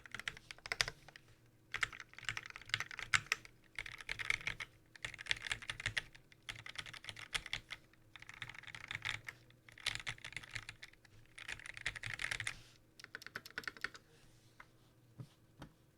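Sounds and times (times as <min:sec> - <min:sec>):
mechanical keyboard typing: 0:01.7 - 0:14.0.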